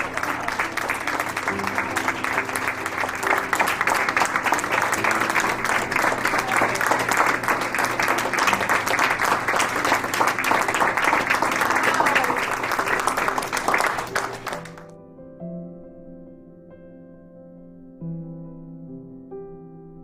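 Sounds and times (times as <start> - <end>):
crowd applauding: 0.0 - 14.9.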